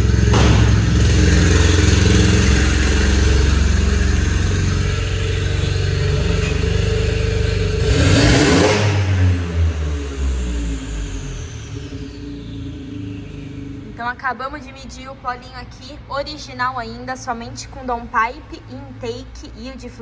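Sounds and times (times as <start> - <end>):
loud rushing burst: 0.0 - 3.5
car engine revving hard: 0.0 - 14.0.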